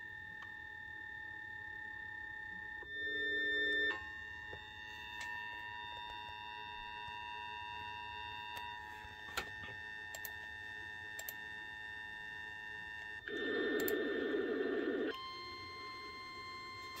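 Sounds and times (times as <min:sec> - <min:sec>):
faint whining tones: 0:00.0 - 0:17.0
radio electronic hum: 0:13.2 - 0:15.2.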